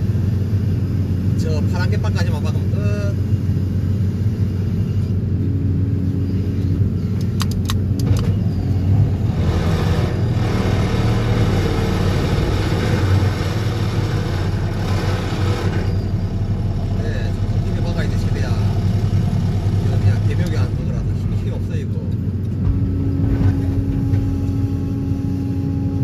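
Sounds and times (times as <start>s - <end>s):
sharp metallic clicks: 7.2s - 8.4s.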